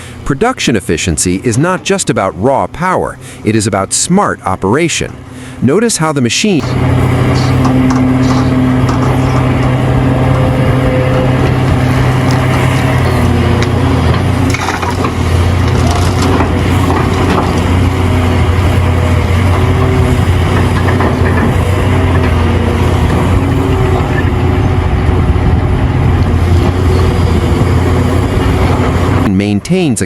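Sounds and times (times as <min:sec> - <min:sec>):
excavator diesel engine running: 0:00.0 - 0:30.0
rock and dirt crunching: 0:06.6 - 0:29.3.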